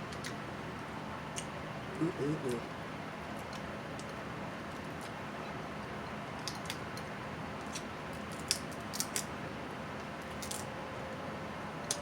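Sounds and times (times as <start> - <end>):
crab shell clicks and snaps: 6.4 - 9.3, 10.3 - 10.7.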